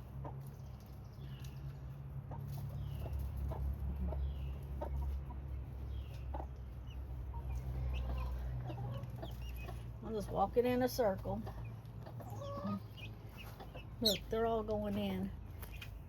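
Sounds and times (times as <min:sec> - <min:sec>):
keets peeping: 0:00.0 - 0:16.0
steady low rumble: 0:00.0 - 0:16.0
hen clucking softly: 0:02.3 - 0:05.4, 0:06.1 - 0:10.5, 0:11.3 - 0:14.4.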